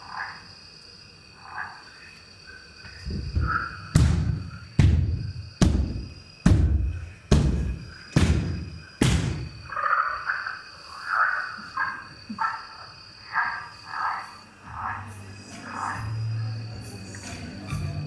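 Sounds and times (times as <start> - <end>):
heavy drum beats: 3.4 - 9.6.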